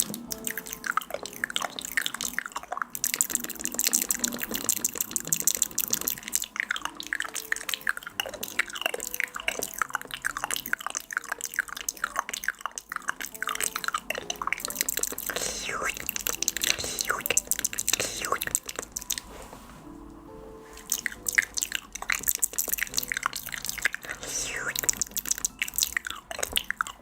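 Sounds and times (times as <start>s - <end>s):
small wet plops and clicks: 24.7s - 27.0s.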